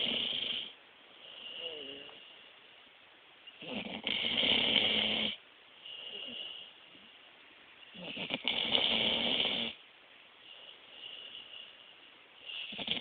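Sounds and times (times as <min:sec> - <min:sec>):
dog snoring: 0:00.0 - 0:02.4, 0:03.5 - 0:06.7, 0:07.9 - 0:09.8, 0:10.4 - 0:13.0.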